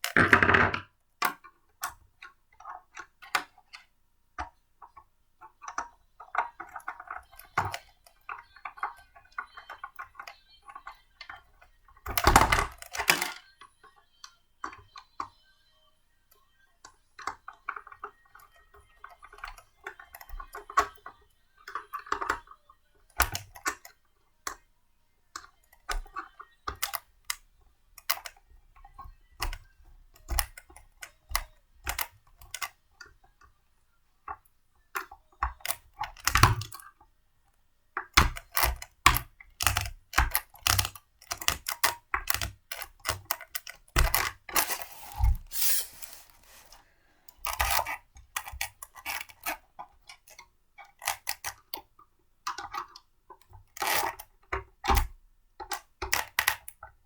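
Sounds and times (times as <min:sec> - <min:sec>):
blender parts clicking and knocking: 0:00.0 - 0:01.5, 0:38.0 - 0:46.7.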